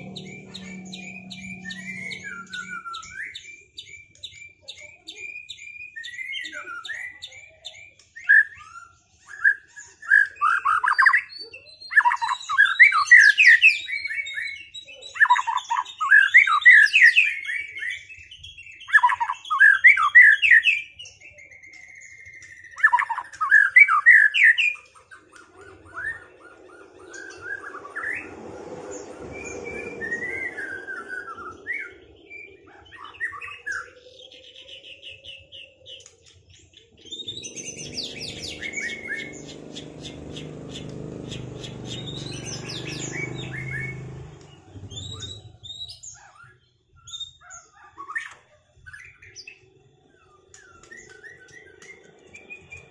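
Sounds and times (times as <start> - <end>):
faint low hum: 0.0 - 3.2
birds singing chirps and whistles: 0.0 - 52.9.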